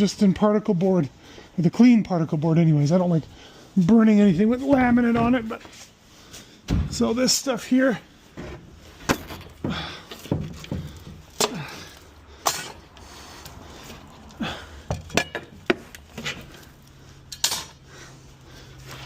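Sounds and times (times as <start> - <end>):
wooden debris knocking and clattering: 8.4 - 12.8.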